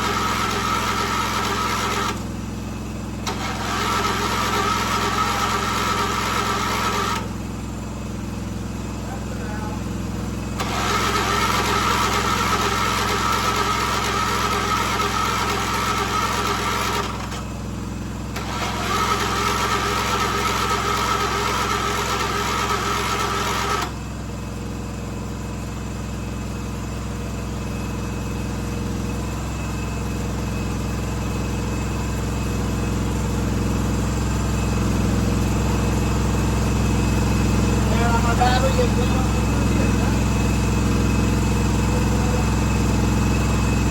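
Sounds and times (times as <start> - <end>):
starter motor cranking: 0.0 - 2.4, 3.2 - 7.4, 10.4 - 17.5, 18.3 - 24.0, 36.8 - 43.9
engine running steadily: 0.0 - 43.9.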